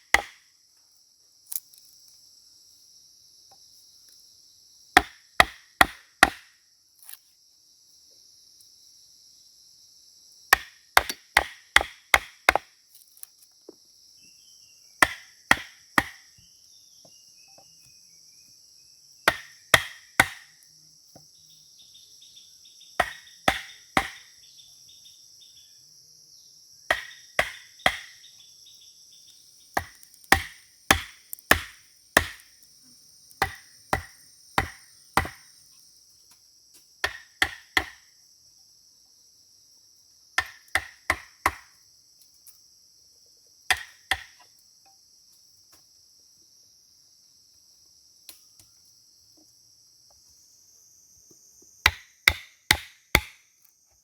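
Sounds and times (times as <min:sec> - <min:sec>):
axe chopping wood: 0:00.0 - 0:00.4, 0:05.0 - 0:06.6, 0:10.5 - 0:12.7, 0:15.0 - 0:16.2, 0:19.3 - 0:20.6, 0:23.0 - 0:24.3, 0:26.9 - 0:28.2, 0:29.8 - 0:32.5, 0:33.4 - 0:35.5, 0:37.0 - 0:38.0, 0:40.4 - 0:41.7, 0:43.7 - 0:44.4, 0:51.9 - 0:53.4.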